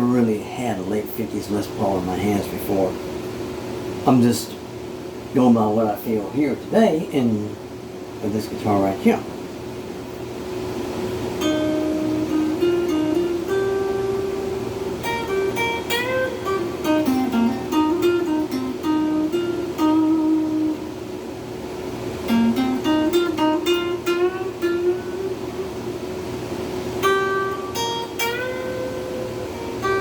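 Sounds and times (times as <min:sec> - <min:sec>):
electric guitar lead: 0:11.0 - 0:30.0.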